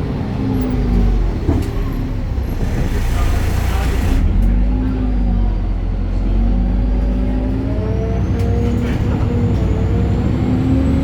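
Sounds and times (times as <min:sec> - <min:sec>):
bus engine rumble: 0:00.0 - 0:11.0.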